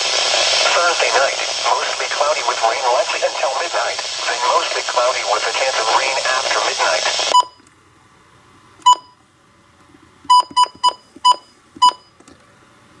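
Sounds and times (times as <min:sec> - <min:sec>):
radio broadcast: 0:00.0 - 0:07.4.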